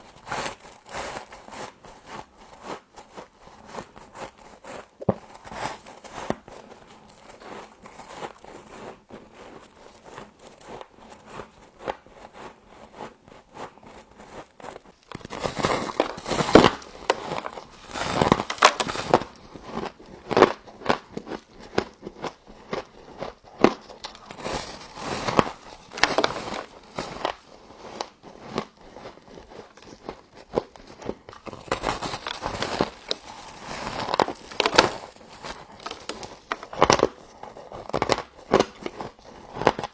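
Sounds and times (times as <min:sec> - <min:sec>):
frost crunching while chewed: 0:13.7 - 0:39.9.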